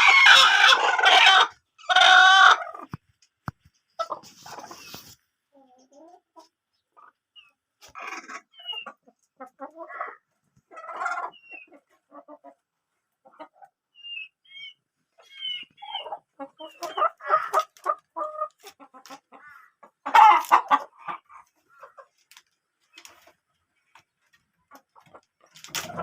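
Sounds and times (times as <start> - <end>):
hens clucking: 0.0 - 26.0.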